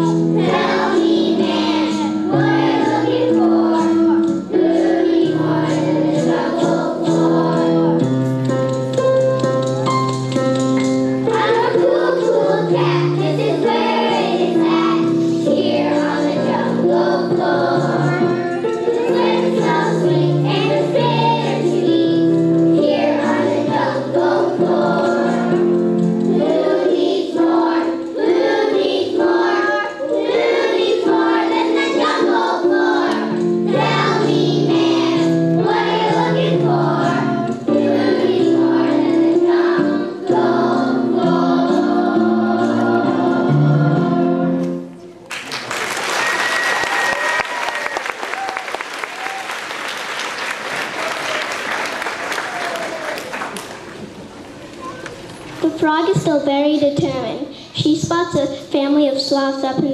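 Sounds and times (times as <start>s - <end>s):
children's choir singing: 0.0s - 8.2s, 10.8s - 45.0s
instrumental accompaniment: 0.0s - 45.3s.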